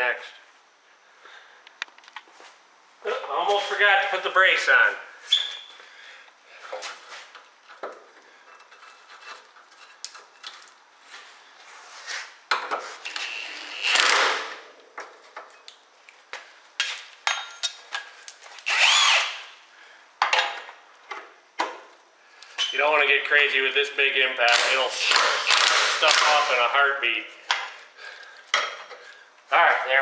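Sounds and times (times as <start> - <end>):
impact wrench bursts: 13.0 - 14.6, 18.6 - 19.5, 24.5 - 26.6
tools and parts clinking: 16.8 - 18.1.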